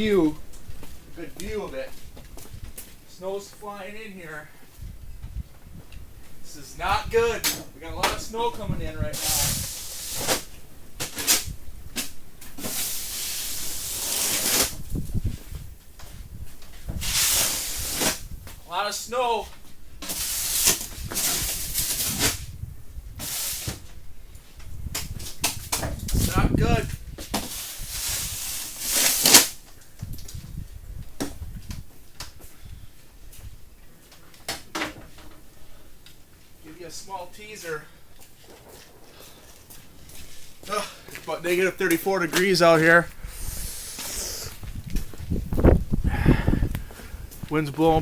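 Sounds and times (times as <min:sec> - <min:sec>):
hiss of wind-driven snow: 0:08.4 - 0:11.7, 0:12.6 - 0:19.4, 0:20.0 - 0:31.0, 0:43.1 - 0:48.0
blizzard wind gusting: 0:14.7 - 0:18.6, 0:19.9 - 0:23.2, 0:42.6 - 0:48.0.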